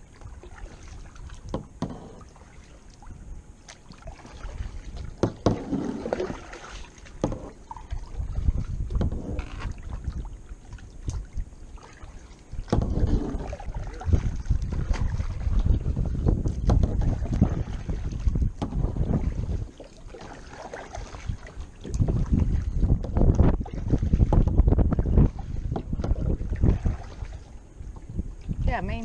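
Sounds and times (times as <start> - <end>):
paddle strokes splashing: 0.0 - 29.0
water sloshing against hull: 0.0 - 29.0
low rumble: 12.7 - 19.7.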